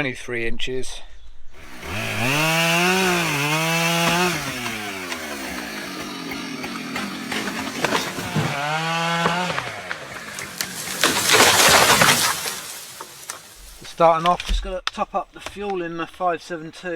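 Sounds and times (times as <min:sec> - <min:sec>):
chainsaw revving: 0:01.6 - 0:14.2.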